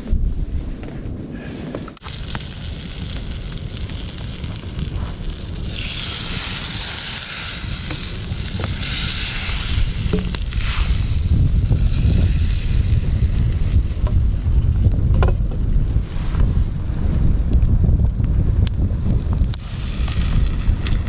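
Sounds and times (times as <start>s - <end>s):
wind buffeting microphone: 0.0s - 21.0s
loud hiss: 2.0s - 13.6s, 19.6s - 21.0s.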